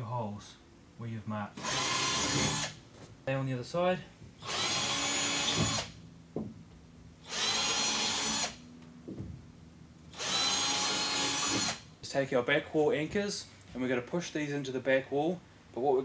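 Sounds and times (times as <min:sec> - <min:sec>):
cordless drill drilling into wall: 0:01.6 - 0:02.8, 0:04.4 - 0:06.0, 0:07.2 - 0:08.6, 0:10.1 - 0:11.8.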